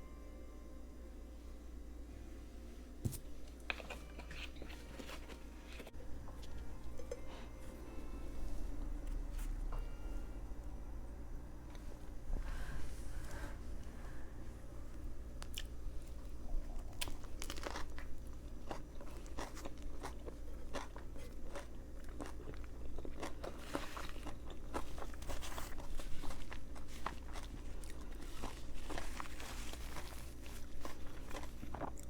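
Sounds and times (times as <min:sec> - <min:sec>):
person chewing sandwich crunching: 0:03.5 - 0:07.2, 0:15.4 - 0:32.0.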